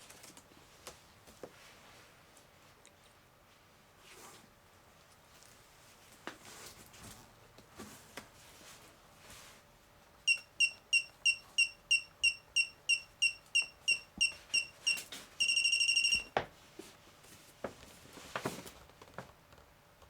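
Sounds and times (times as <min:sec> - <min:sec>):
electronic buzzer beeping: 0:10.3 - 0:16.3.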